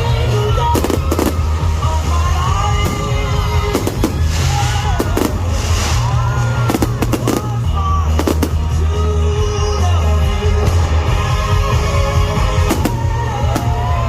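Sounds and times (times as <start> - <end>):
loud music with heavy bass: 0.0 - 14.0
fireworks banging: 0.6 - 9.8, 12.4 - 14.0.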